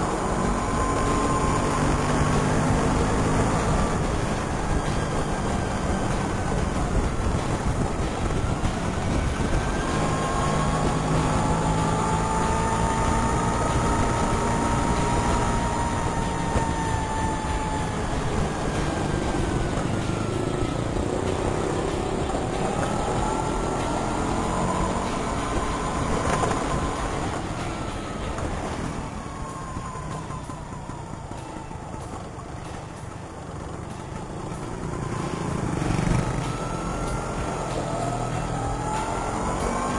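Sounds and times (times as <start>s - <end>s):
scooter engine rumble: 11.4s - 39.9s.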